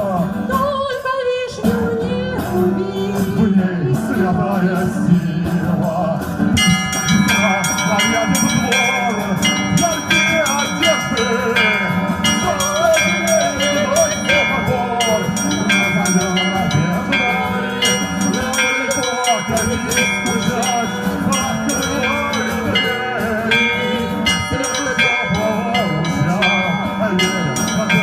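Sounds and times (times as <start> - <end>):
church bells chiming: 6.6 - 28.0.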